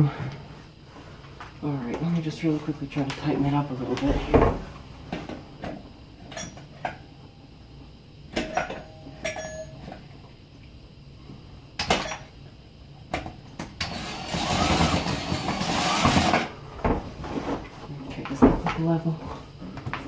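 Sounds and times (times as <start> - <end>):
faint metallic ringing: 6.3 - 7.5, 8.4 - 10.0
screws being tightened by hand: 13.8 - 16.5.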